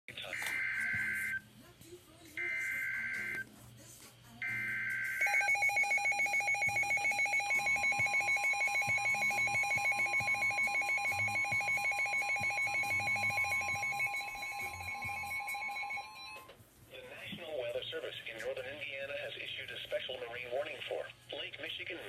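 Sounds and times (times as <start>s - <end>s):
pulsing electronic alert tone: 4.4s - 16.4s.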